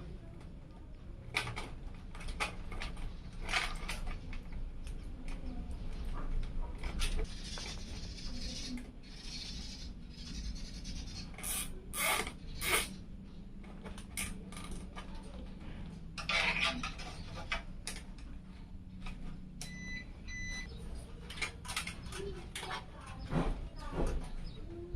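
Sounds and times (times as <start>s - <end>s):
short high beeps: 19.6s - 20.7s.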